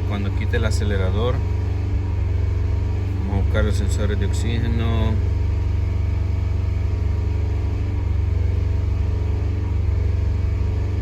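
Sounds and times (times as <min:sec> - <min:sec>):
car engine running with misfire: 0:00.0 - 0:11.0.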